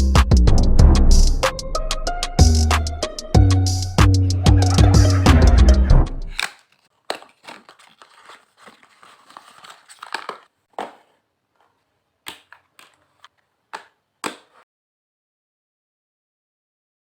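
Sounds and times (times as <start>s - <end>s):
plastic wrapping crinkling and tearing: 6.3s - 14.6s
box clicks and taps: 12.3s - 14.6s.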